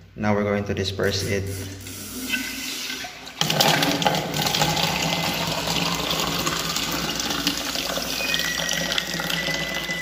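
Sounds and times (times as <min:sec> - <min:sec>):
water pouring into cup: 0:02.6 - 0:10.0
thin high tone: 0:08.1 - 0:10.0.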